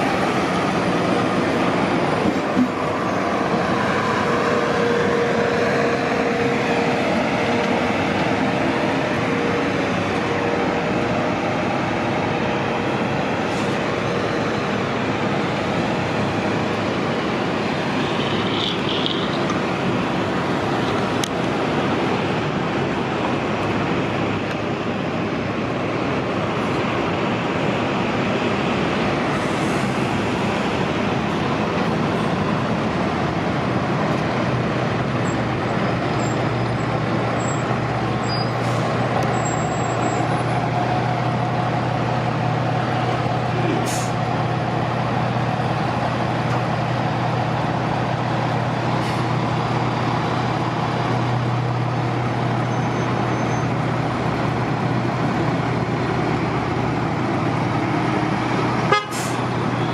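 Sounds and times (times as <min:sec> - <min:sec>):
bus engines rumbling: 0:00.0 - 0:59.9
brief high squeak: 0:38.2 - 0:38.7.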